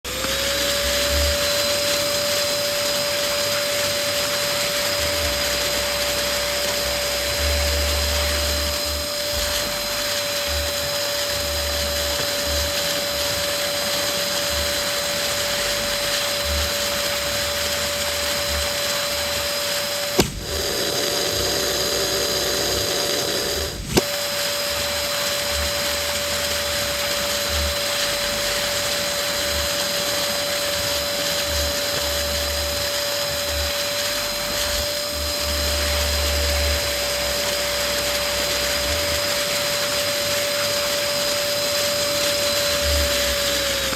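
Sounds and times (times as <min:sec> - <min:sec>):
balloon pump motor whine: 0:00.0 - 0:43.9
sharp click: 0:20.2 - 0:20.9, 0:23.6 - 0:24.1.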